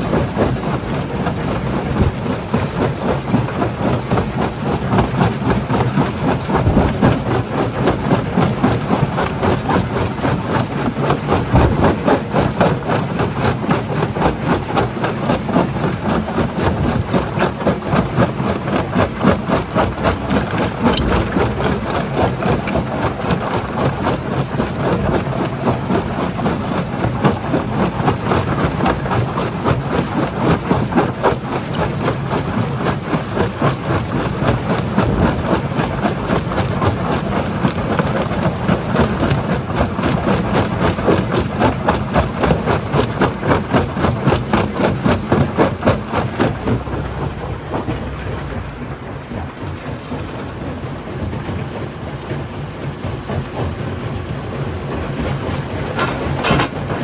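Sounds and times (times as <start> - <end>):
machine drone: 0.0 - 57.0.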